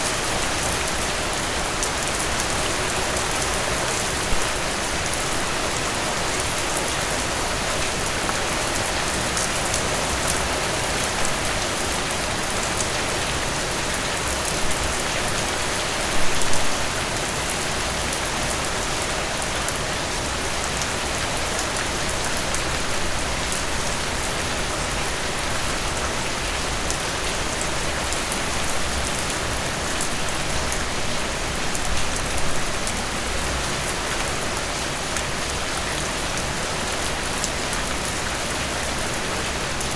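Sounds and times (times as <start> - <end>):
steady rain pattering: 0.0 - 39.9.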